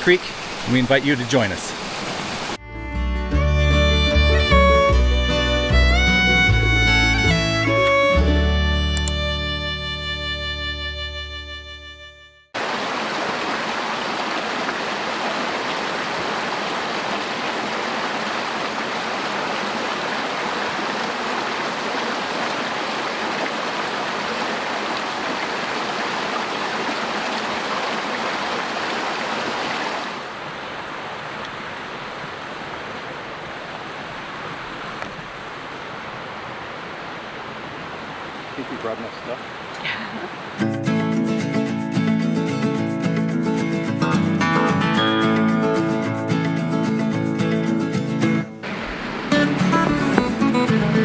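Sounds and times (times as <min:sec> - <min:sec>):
creek rushing: 0:00.0 - 0:02.6, 0:12.6 - 0:40.7, 0:48.6 - 0:51.0
fiddle music: 0:02.6 - 0:12.6, 0:44.0 - 0:46.5, 0:48.7 - 0:51.0.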